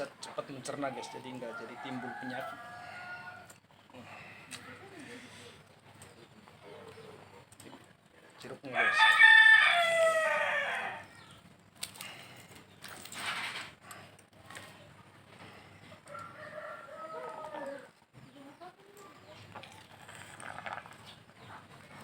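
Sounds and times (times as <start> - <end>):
rooster crowing: 0.9 - 3.6, 8.7 - 11.3, 16.1 - 18.0
clicks and rustles: 11.8 - 14.8.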